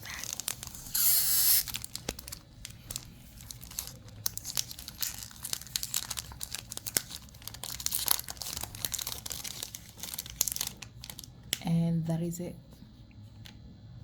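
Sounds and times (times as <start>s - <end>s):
plastic wrapper crinkling and tearing: 0.0s - 11.6s.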